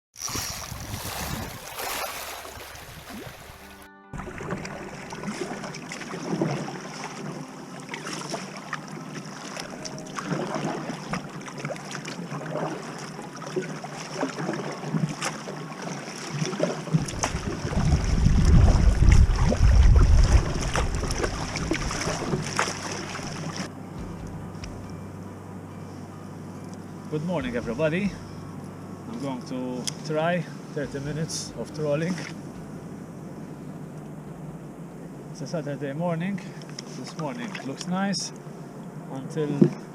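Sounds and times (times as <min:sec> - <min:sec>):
water: 0:00.1 - 0:23.8, 0:25.7 - 0:39.9
wind: 0:00.1 - 0:39.9
small knocks and splashes: 0:00.2 - 0:07.3, 0:07.9 - 0:23.7
wind buffeting on microphone: 0:00.3 - 0:04.8, 0:17.0 - 0:22.6.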